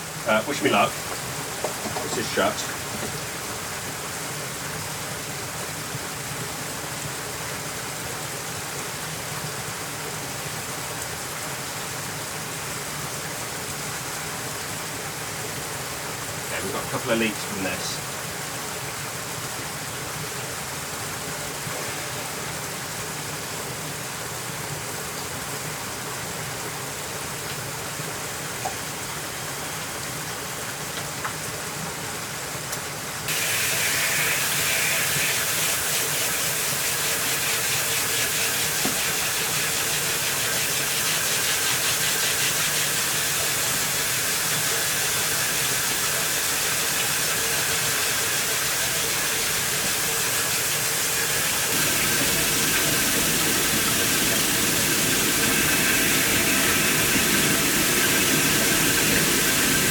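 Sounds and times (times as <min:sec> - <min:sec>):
pressurised water hissing: 0:00.0 - 0:05.1, 0:16.4 - 0:18.1, 0:21.0 - 0:23.3, 0:33.3 - 0:59.9
water rushing through turbine: 0:00.0 - 0:30.9, 0:33.1 - 0:59.9.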